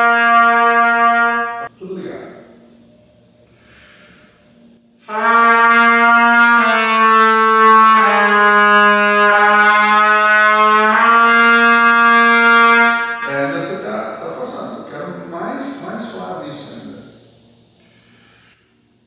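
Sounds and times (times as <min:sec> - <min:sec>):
trumpet sustained note: 0:00.0 - 0:18.9
breath: 0:03.5 - 0:04.6, 0:17.4 - 0:19.0.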